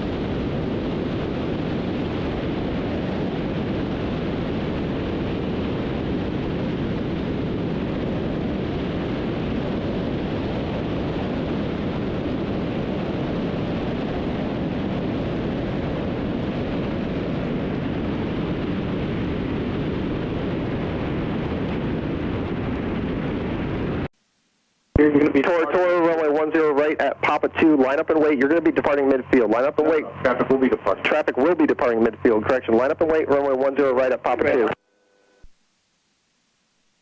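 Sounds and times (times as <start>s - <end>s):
aircraft engine and propeller noise: 25.0s - 34.8s.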